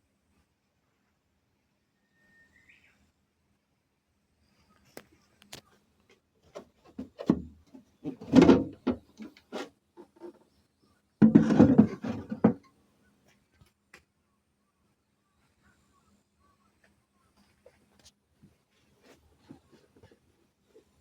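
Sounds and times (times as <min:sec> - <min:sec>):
object knocking and clattering: 0:11.2 - 0:12.7.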